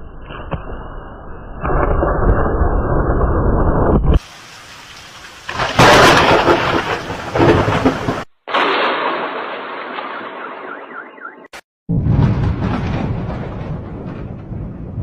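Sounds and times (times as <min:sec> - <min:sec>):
thunderclap: 0:05.4 - 0:10.8, 0:11.9 - 0:15.0
dull roll of thunder: 0:05.5 - 0:10.4, 0:11.9 - 0:15.0.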